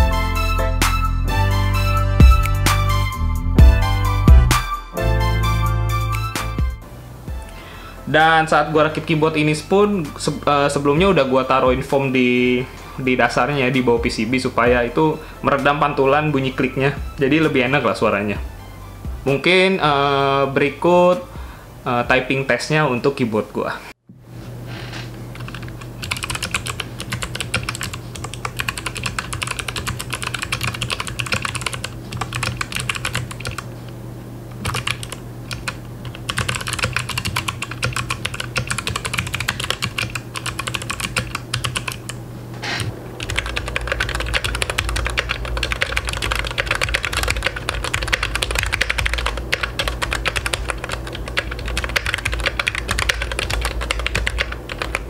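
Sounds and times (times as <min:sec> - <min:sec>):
steady low hum: 0:06.4 - 0:55.0
mechanical keyboard typing: 0:25.4 - 0:33.7, 0:34.6 - 0:42.1, 0:43.2 - 0:55.0.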